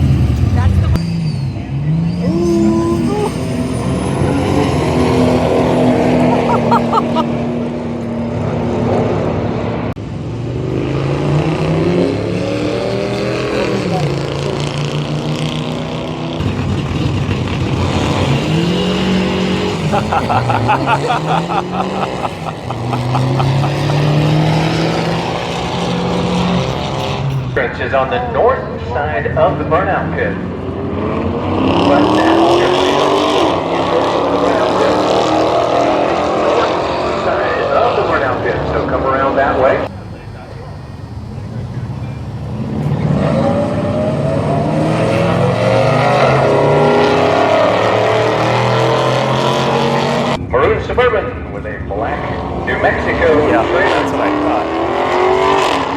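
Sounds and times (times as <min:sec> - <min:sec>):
loud car engine accelerating: 0:00.0 - 0:27.6, 0:28.6 - 0:50.5, 0:51.8 - 0:55.9
car engine running: 0:16.4 - 0:27.4
low rumble of running engines: 0:38.1 - 0:44.6.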